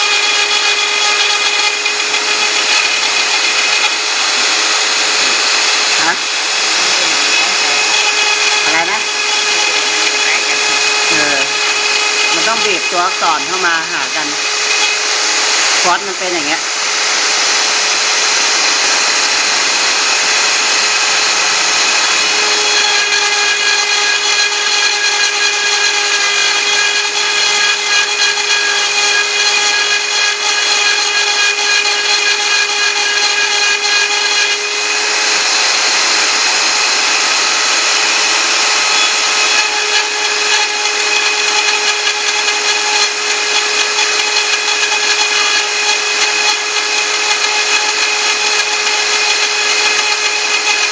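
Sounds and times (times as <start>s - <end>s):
router spindle high whine: 0.0s - 50.9s.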